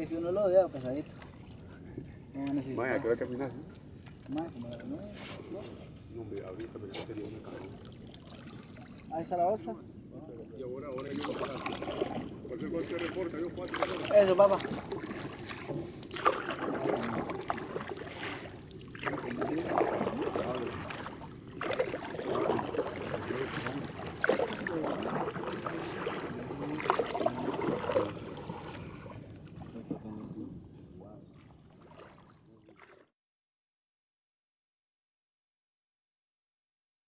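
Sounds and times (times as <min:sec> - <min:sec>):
high-pitched insect drone: 0:00.0 - 0:32.6
boat splashing and knocking: 0:04.3 - 0:09.8, 0:10.6 - 0:30.6, 0:31.3 - 0:33.1.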